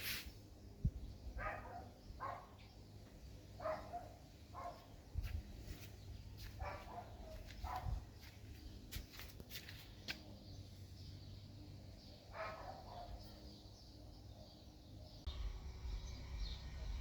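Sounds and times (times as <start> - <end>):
dog barking: 1.4 - 2.6, 3.6 - 4.9, 6.4 - 8.0, 12.3 - 13.2.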